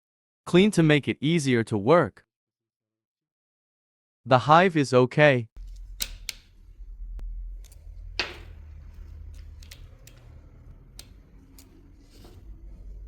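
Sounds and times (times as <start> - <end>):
steady low hum: 5.6 - 13.0
light clicks and taps of parts: 7.6 - 12.4.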